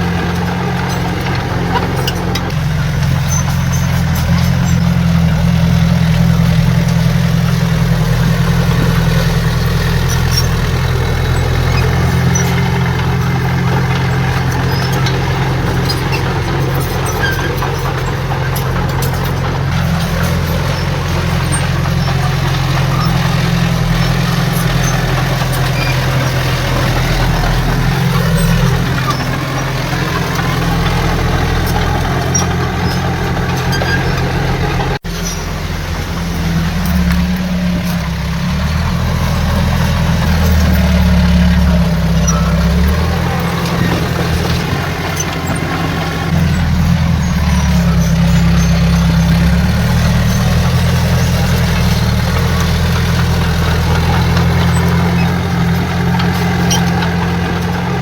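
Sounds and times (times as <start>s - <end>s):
heavy diesel engine droning: 0.0s - 58.0s.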